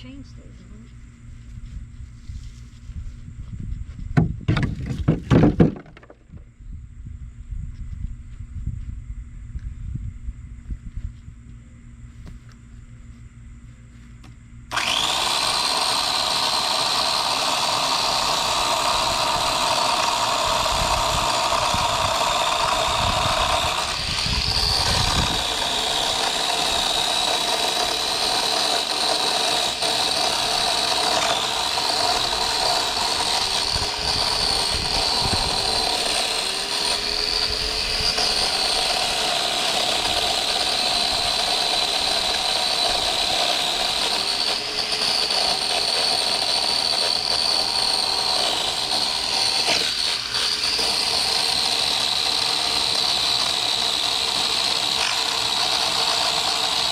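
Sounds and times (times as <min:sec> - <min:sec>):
chainsaw whining: 0:14.7 - 0:56.9.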